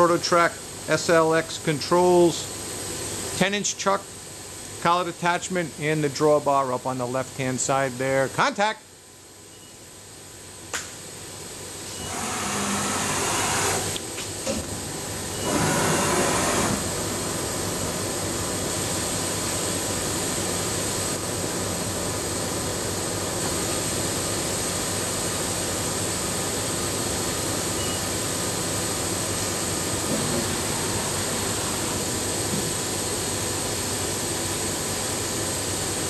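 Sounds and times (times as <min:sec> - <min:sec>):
lathe whirring: 0:11.9 - 0:14.0, 0:15.4 - 0:16.9.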